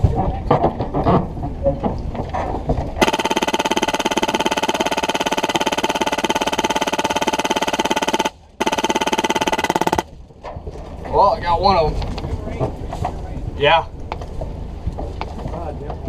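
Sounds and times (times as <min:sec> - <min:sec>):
airsoft machine gun firing bursts: 0:03.0 - 0:10.1.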